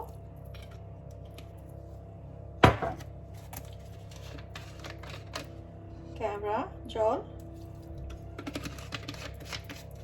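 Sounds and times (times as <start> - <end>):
steady low hum: 0.0 - 10.0
sharp kitchen knock: 2.6 - 3.0.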